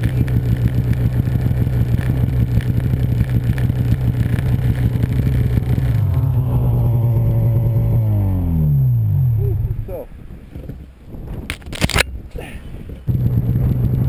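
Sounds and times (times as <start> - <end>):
snowmobile engine running: 0.0 - 11.2, 12.9 - 14.0.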